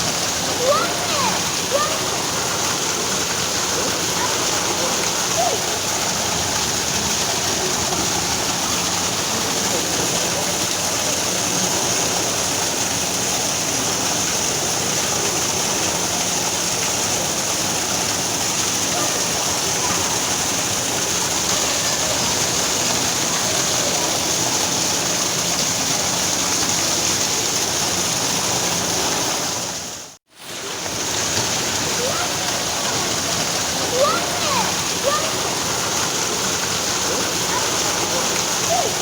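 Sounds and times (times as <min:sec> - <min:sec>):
waterfall rushing: 0:00.0 - 0:39.0.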